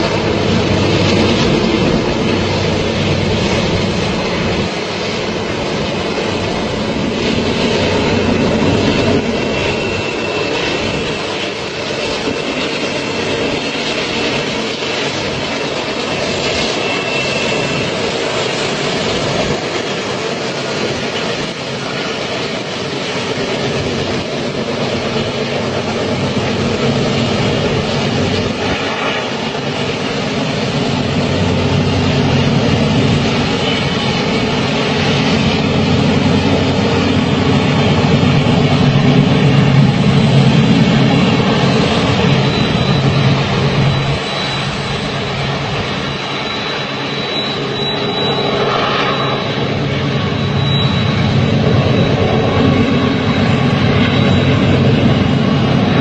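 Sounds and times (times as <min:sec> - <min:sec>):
train rumbling on rails: 0:00.0 - 0:56.0
high wheel squeal: 0:15.2 - 0:20.7, 0:26.2 - 0:56.0.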